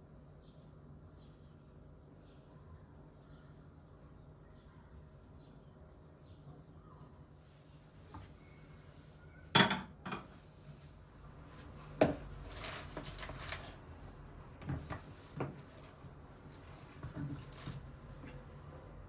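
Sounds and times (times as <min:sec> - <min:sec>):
dishes and cutlery clattering: 0:09.6 - 0:10.3.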